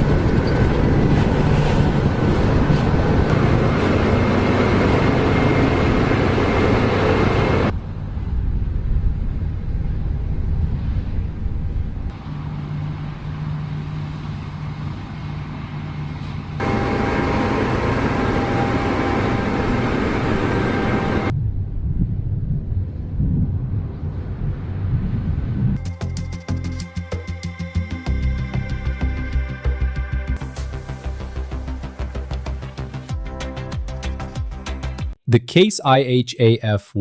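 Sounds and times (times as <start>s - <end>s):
combine harvester engine drone: 0.0s - 9.6s, 12.1s - 21.3s.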